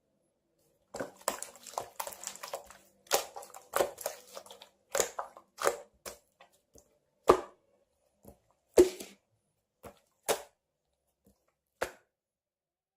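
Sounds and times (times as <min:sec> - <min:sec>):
slime popping and squelching: 0:00.9 - 0:09.2.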